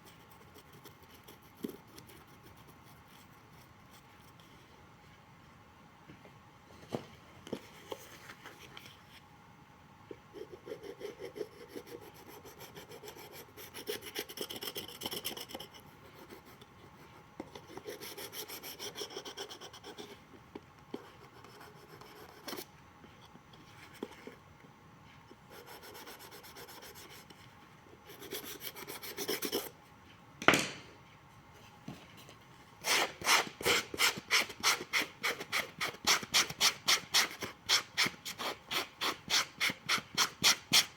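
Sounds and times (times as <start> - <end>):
sharp knock: 30.4 - 30.9.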